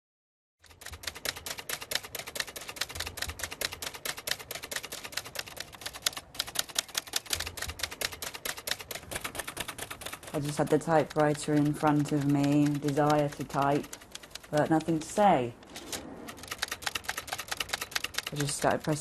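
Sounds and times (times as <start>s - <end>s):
typewriter keys clacking: 0.6s - 19.0s.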